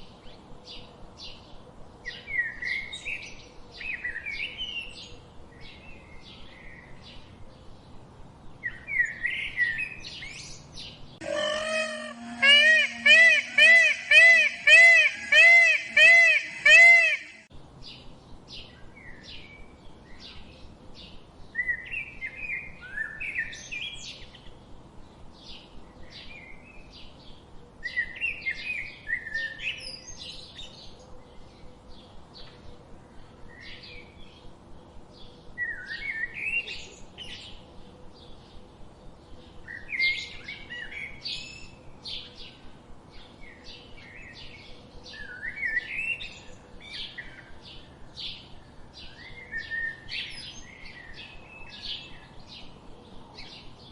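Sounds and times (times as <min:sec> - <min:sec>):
birds chirping: 0:10.6 - 0:17.5
bird twittering phrases: 0:11.2 - 0:17.5.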